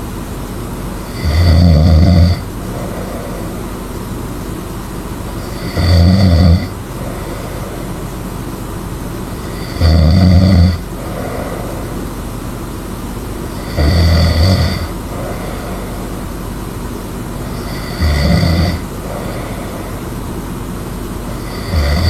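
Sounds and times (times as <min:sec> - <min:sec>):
steady low hum: 0:00.0 - 0:22.0
person snoring loudly: 0:01.0 - 0:03.9, 0:05.4 - 0:08.1, 0:09.3 - 0:12.2, 0:13.5 - 0:16.4, 0:17.4 - 0:20.2, 0:21.3 - 0:22.0
soft breath: 0:02.6 - 0:04.4, 0:06.9 - 0:08.4, 0:10.8 - 0:12.8, 0:14.8 - 0:16.7, 0:18.8 - 0:20.6.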